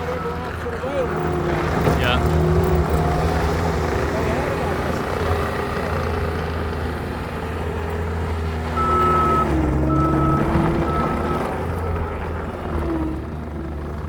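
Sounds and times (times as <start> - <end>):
reversing alarm beeps: 0.0 - 0.7, 8.8 - 11.6
diesel loader engine running: 0.0 - 14.0.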